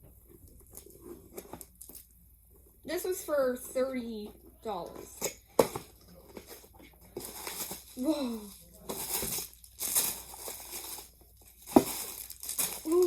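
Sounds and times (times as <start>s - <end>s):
packaging rustling and crinkling: 5.6s - 13.0s.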